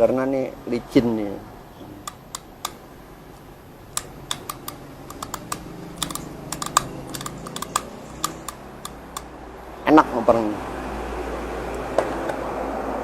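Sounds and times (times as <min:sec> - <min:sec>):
gear-change mechanism clicking: 0:02.0 - 0:02.9, 0:03.8 - 0:09.3.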